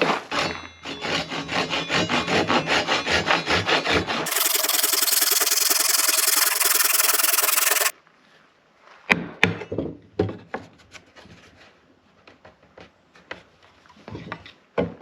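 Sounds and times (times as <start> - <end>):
hand saw cutting wood: 1.0 - 7.9.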